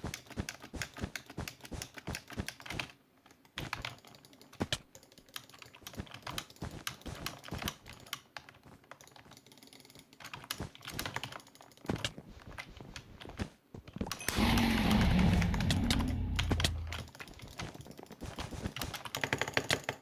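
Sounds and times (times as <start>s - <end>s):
steady low hum: 14.3s - 17.1s.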